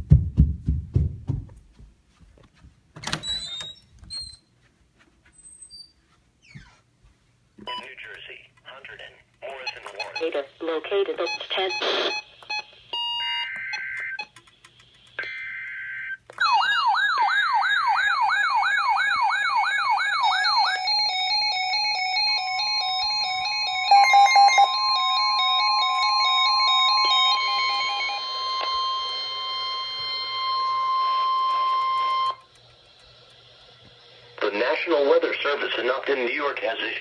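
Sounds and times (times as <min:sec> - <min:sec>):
steady warning alarm tone: 0:11.2 - 0:14.4, 0:15.2 - 0:35.3
siren-like alarm wail: 0:15.2 - 0:32.5.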